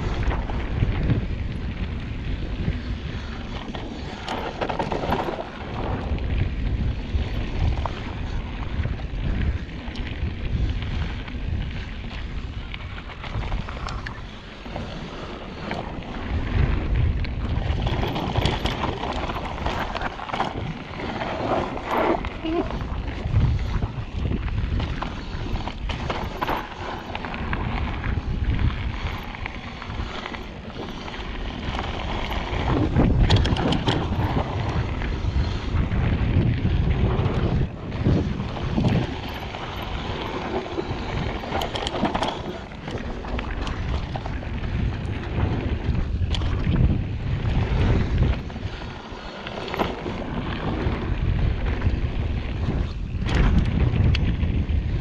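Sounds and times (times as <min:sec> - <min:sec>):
bike rattles and knocks: 0:00.0 - 0:55.0
knobby tyres rumbling on dirt: 0:00.0 - 0:55.0
wind buffeting microphone: 0:00.0 - 0:55.0.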